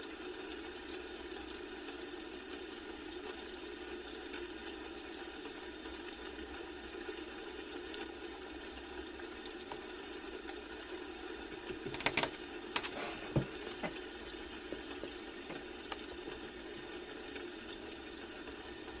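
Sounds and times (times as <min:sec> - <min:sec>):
keyboard keystrokes: 0:11.8 - 0:13.9.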